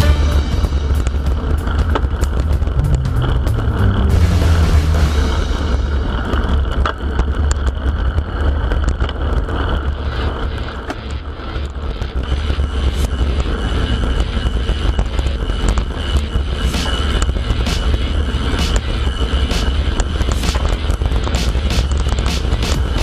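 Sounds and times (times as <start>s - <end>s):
tyre and road noise: 0.0s - 23.0s
wind rumble on microphone: 0.0s - 23.0s
bicycle clicks and rattles: 6.2s - 12.5s.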